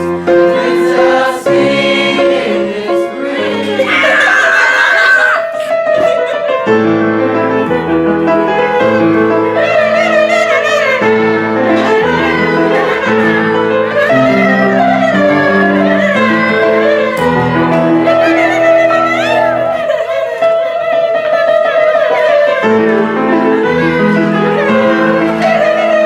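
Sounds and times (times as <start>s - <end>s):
piano chords: 0.0s - 26.0s
bowed-string melody: 5.7s - 26.0s.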